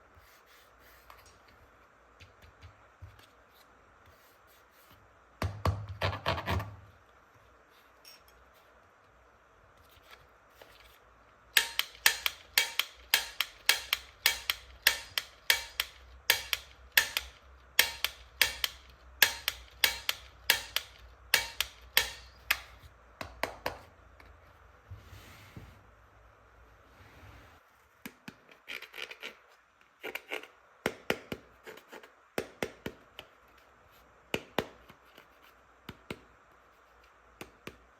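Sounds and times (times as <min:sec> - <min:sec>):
sharp plastic clicks: 0:11.5 - 0:23.8.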